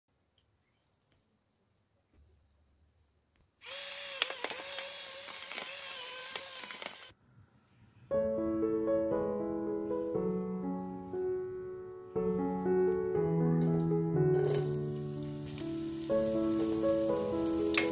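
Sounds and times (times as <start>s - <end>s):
slow keyboard music: 8.1s - 17.9s.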